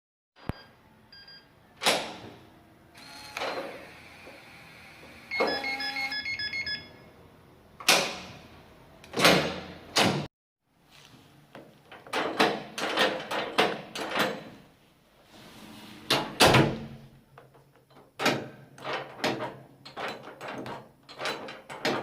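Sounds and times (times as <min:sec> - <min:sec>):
electronic lock beep tune: 0:05.3 - 0:07.0.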